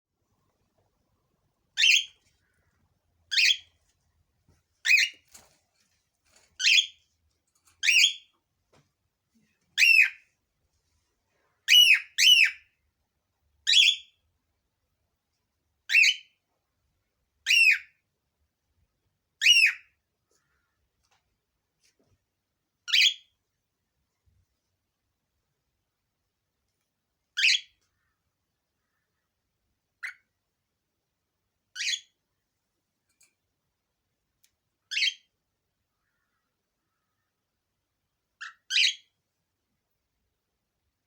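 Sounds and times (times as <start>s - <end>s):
cockatiel calling: 1.8s - 2.2s, 3.3s - 3.8s, 4.8s - 5.2s, 7.8s - 8.3s, 9.8s - 10.2s, 11.7s - 12.7s, 17.5s - 18.0s, 19.4s - 19.9s, 27.4s - 27.7s, 31.8s - 32.1s, 38.4s - 39.1s.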